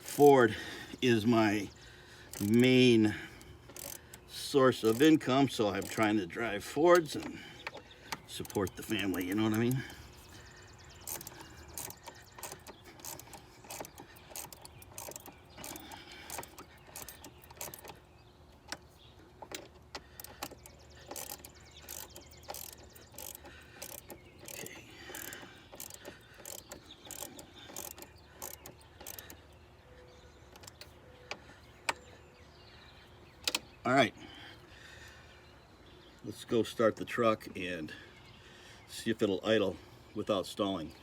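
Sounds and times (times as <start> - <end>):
ratchet wrench clicking: 2.3 - 2.8, 3.7 - 6.2, 11.0 - 18.0, 19.4 - 29.4.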